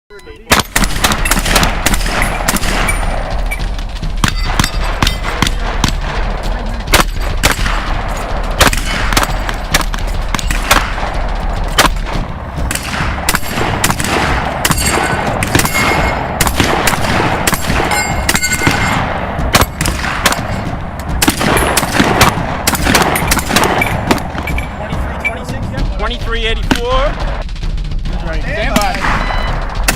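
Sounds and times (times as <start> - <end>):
shotgun shots: 0.5 - 25.5, 28.5 - 29.9
steel targets ringing: 14.7 - 16.3, 17.5 - 19.0.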